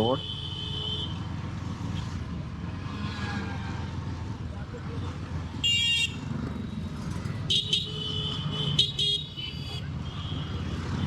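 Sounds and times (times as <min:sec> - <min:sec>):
motorcycle rumble: 0:00.3 - 0:11.0
vehicle horn honks: 0:07.5 - 0:10.6.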